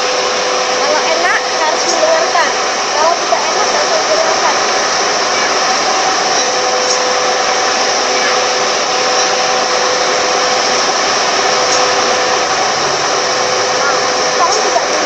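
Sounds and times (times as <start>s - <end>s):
car air conditioning blower: 0.0s - 15.0s.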